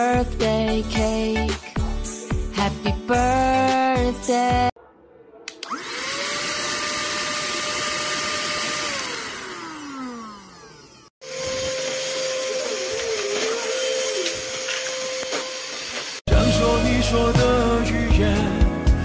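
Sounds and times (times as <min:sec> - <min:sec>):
handheld vacuum cleaner running: 0:05.6 - 0:16.2.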